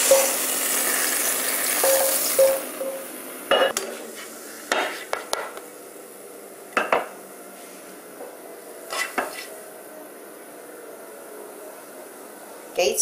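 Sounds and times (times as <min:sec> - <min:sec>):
food sizzling in a wok: 0:00.0 - 0:03.3
utensil scraping a wok: 0:08.9 - 0:09.5.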